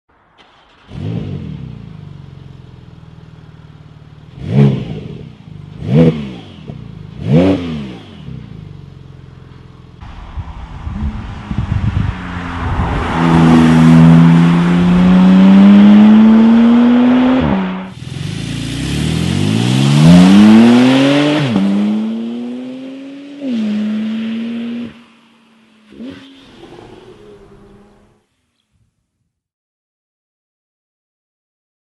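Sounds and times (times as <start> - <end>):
sports car engine revving: 0.5 - 25.1.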